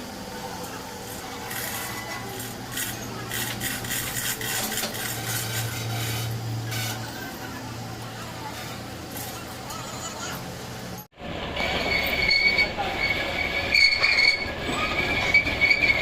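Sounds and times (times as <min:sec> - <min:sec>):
tool rasping and scraping: 0:01.5 - 0:07.0.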